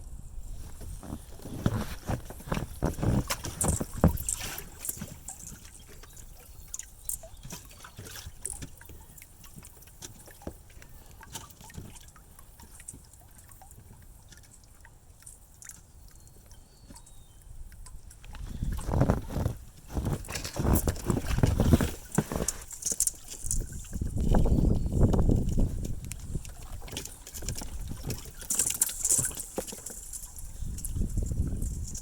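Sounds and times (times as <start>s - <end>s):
ice ticking and pinging: 0.7s - 32.0s
ice cracking and thudding: 18.7s - 23.7s.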